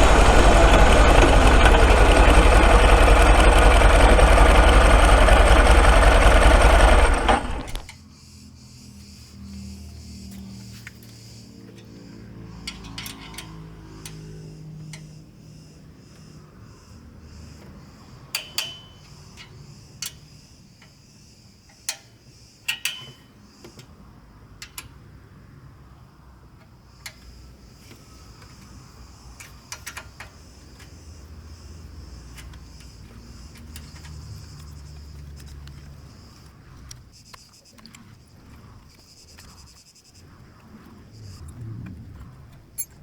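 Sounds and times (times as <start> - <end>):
metallic clicks of hand tools: 12.6 - 14.3, 18.3 - 21.0, 21.7 - 23.3, 24.6 - 25.0, 29.4 - 30.4.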